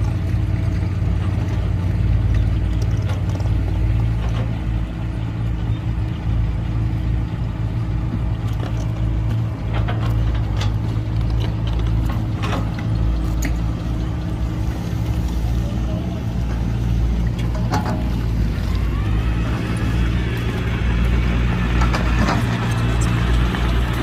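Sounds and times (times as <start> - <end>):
heavy diesel engine running: 0.0 - 24.0
short knocks and clanks: 17.3 - 18.3.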